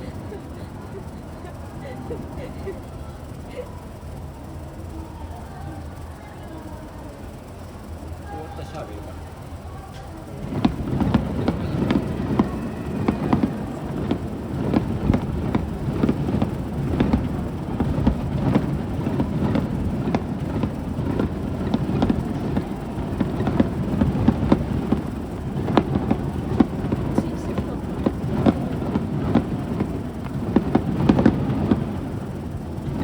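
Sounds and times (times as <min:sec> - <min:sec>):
continuous rumble: 0:00.0 - 0:33.0
fireworks booming and cracking: 0:10.3 - 0:33.0.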